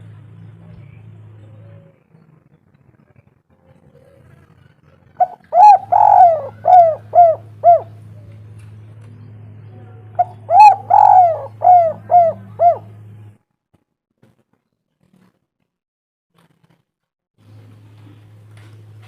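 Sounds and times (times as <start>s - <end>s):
low steady hum: 0.0s - 13.4s
dove cooing: 5.1s - 8.5s, 10.2s - 13.1s.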